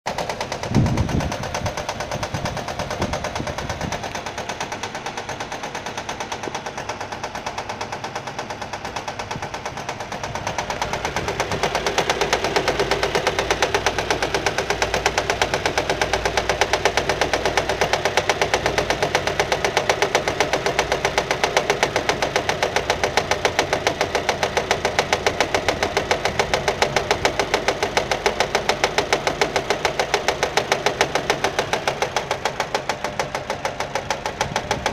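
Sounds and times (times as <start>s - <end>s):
car engine running: 0.0s - 34.9s
rapid regular clicking knock: 0.1s - 34.9s.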